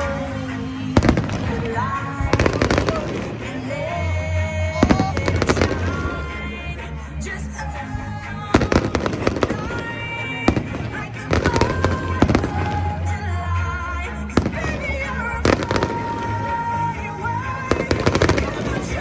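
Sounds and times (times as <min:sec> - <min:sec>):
music with steady bass line: 0:00.0 - 0:19.0
fireworks bangs and crackles: 0:01.0 - 0:03.7, 0:04.8 - 0:06.3, 0:08.5 - 0:12.8, 0:14.4 - 0:19.0.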